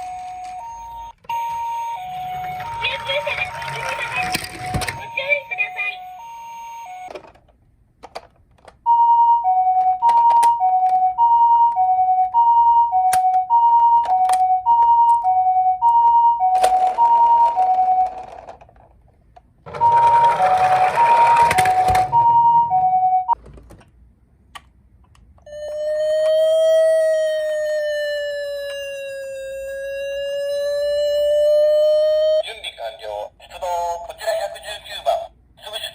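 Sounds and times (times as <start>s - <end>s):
wailing siren: 0.0s - 7.1s, 8.9s - 18.2s, 19.7s - 23.4s, 25.5s - 32.4s
toy two-tone siren: 0.0s - 7.2s, 8.9s - 18.4s, 19.7s - 23.4s, 25.5s - 32.4s.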